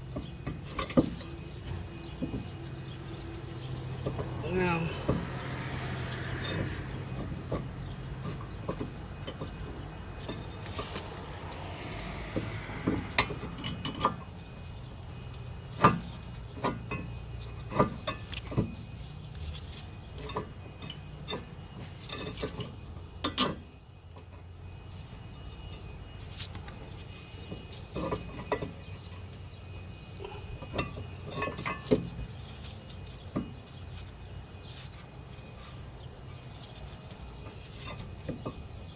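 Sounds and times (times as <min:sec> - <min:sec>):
metal tools clinking and knocking: 0:06.1 - 0:11.2, 0:12.8 - 0:18.9, 0:27.8 - 0:29.3, 0:30.1 - 0:32.4.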